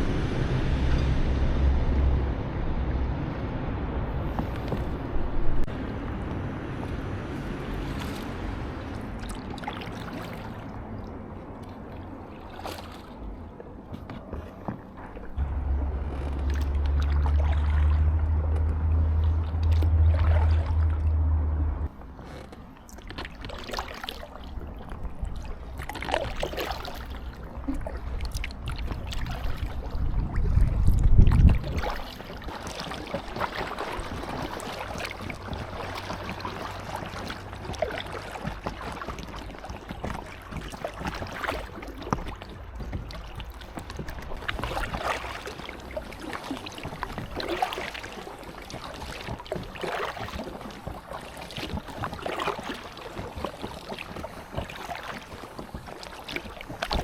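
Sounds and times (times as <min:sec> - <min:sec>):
wind rumble on microphone: 0:00.0 - 0:12.2, 0:27.2 - 0:57.0
paddle strokes splashing water: 0:00.0 - 0:57.0
water lapping around kayak: 0:00.0 - 0:57.0.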